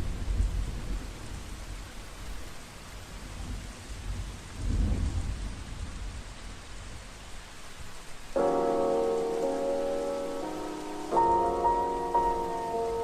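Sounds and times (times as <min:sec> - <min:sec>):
steady rain: 0:00.0 - 0:13.0
low rolls of thunder: 0:03.4 - 0:06.2.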